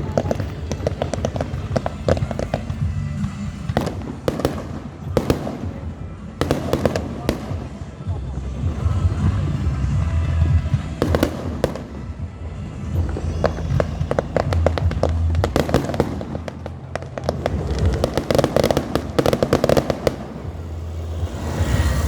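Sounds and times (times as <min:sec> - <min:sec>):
fireworks cracking and banging: 0:00.0 - 0:22.0
fireworks crackling volleys: 0:00.0 - 0:22.0
low rumble: 0:08.0 - 0:22.0.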